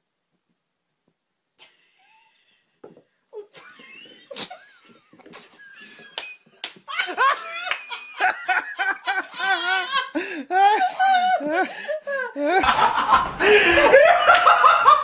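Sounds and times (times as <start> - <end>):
people laughing: 3.5 - 15.0.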